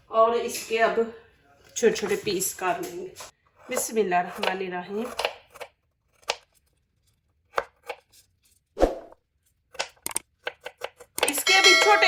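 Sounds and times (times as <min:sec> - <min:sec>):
knife chopping ginger: 0:03.6 - 0:06.7, 0:07.4 - 0:08.3, 0:09.7 - 0:11.9.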